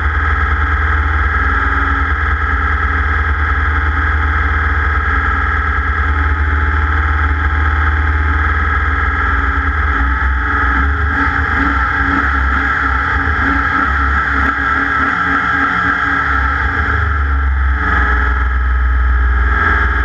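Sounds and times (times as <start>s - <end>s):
deep rumble: 0.0s - 20.0s
distorted race engine revving: 0.0s - 20.0s.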